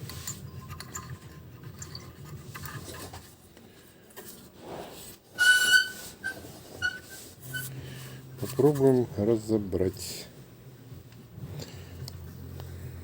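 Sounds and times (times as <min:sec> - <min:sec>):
quiet rubbing and handling: 0:02.0 - 0:13.0
high squeak: 0:05.4 - 0:07.7.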